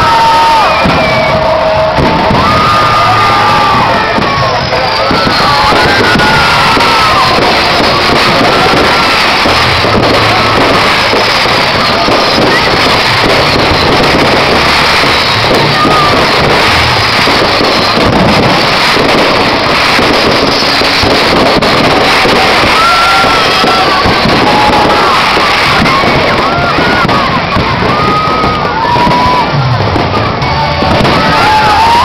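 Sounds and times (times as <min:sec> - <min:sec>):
fireworks bangs: 0:00.0 - 0:32.0
fireworks crackling: 0:00.0 - 0:32.0
fireworks whistling: 0:00.0 - 0:32.0
music with deep bass: 0:29.0 - 0:32.0.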